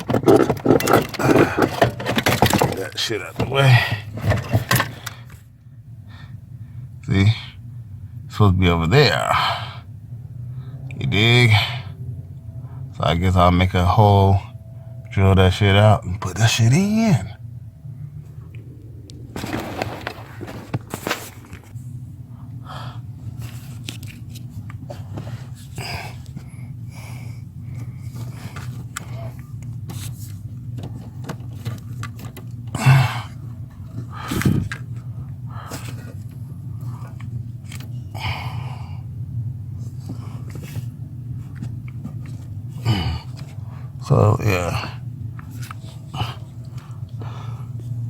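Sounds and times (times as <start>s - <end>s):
knocks and rattles under dashboard: 0.0s - 5.4s
steady low hum: 0.0s - 48.0s.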